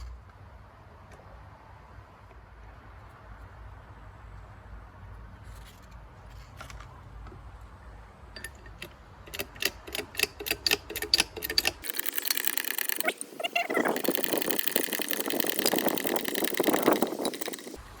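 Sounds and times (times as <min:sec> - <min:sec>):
sharp mechanical clicks: 0:08.4 - 0:17.8
harsh dense rasping noise: 0:11.7 - 0:17.8.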